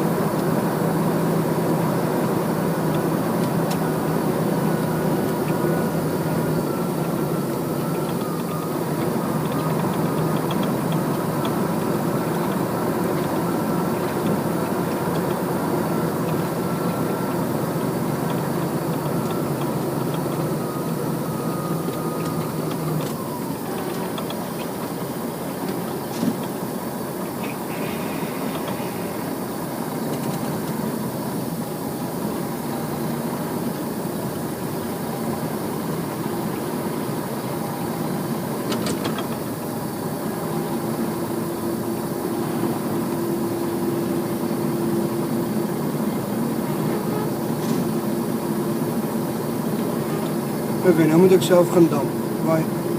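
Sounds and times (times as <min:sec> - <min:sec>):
heavy machinery running: 0:00.0 - 0:52.9.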